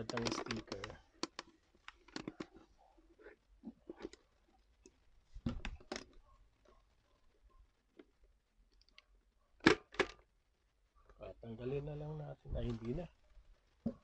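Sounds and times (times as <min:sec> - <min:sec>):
small objects clicking and rustling: 0:00.0 - 0:10.3.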